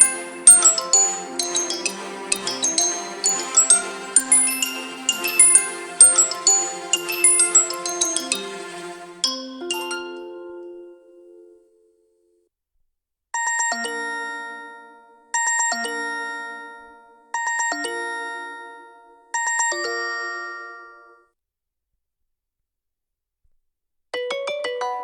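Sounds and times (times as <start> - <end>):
bell-like ringtone chime: 0.0 - 10.4.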